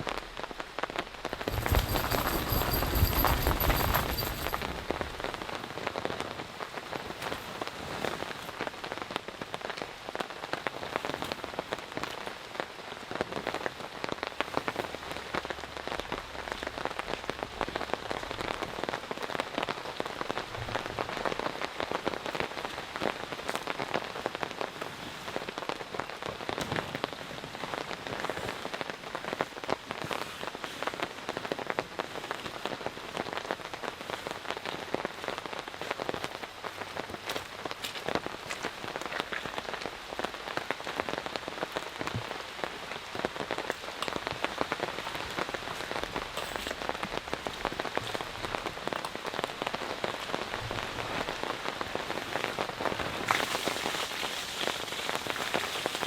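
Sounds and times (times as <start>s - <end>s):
heavy rain falling: 0.0s - 56.0s.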